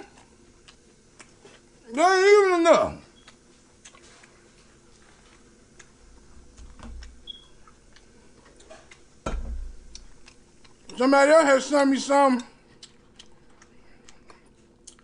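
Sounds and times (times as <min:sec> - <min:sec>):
chewing clicks and smacks: 0:03.2 - 0:04.4, 0:09.9 - 0:11.0, 0:12.4 - 0:15.0
low thump: 0:09.2 - 0:09.7.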